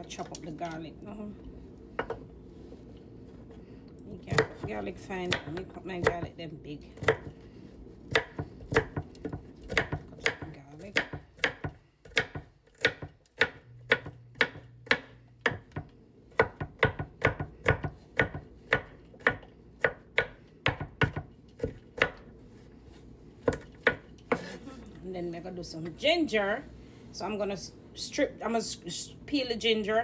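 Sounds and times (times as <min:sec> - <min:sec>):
knife chopping on cutting board: 0:08.1 - 0:22.2, 0:23.4 - 0:24.6.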